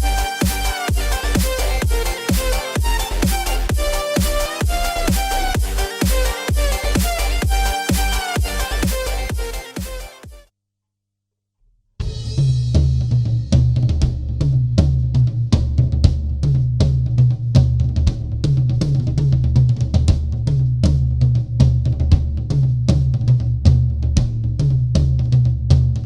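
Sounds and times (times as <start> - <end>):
snare drum: 0.0 - 10.3
kick drum: 0.0 - 10.4, 12.0 - 26.0
cymbal crash: 12.0 - 14.2.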